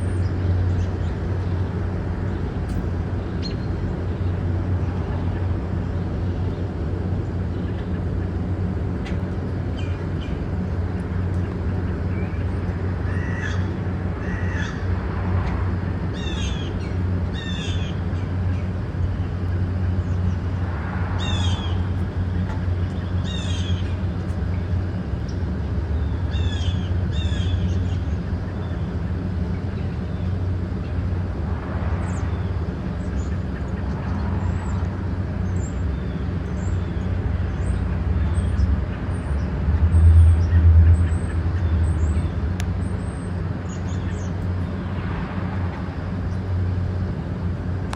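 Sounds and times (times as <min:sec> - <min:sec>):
small birds chirping: 0:00.0 - 0:08.5, 0:16.1 - 0:20.6, 0:21.2 - 0:31.1, 0:32.0 - 0:44.8
low traffic rumble: 0:00.0 - 0:47.9.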